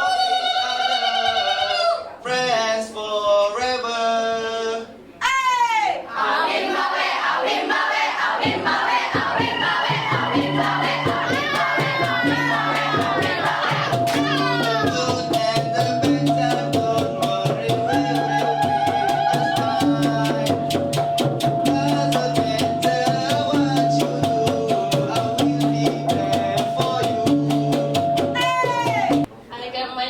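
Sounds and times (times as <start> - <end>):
instrumental music with drum beat: 8.4 - 29.3
repeating bass line: 10.0 - 29.3.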